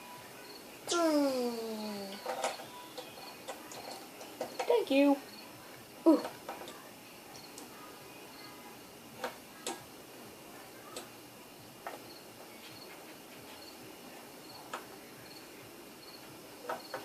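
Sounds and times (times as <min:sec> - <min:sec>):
faint high cricket chirp: 0:00.1 - 0:05.5, 0:08.3 - 0:08.6, 0:12.1 - 0:12.9, 0:13.6 - 0:13.8, 0:15.2 - 0:17.0.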